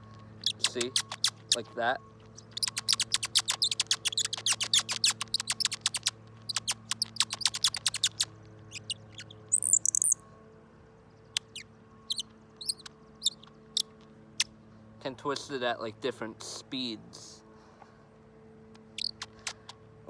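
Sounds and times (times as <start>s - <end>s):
bird caller squeaking chirps: 0.4s - 10.2s, 11.4s - 13.9s, 18.8s - 19.8s.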